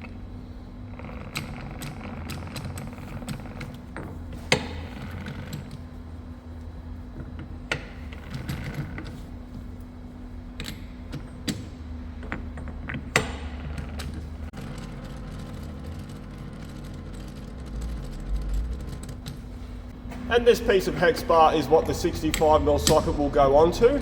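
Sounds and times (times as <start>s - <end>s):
low workshop hum: 0.0s - 24.0s.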